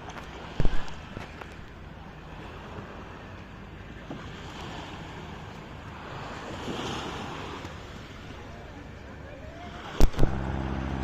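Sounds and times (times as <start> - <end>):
sea water rushing: 0.0 - 11.0
wind: 0.0 - 11.0.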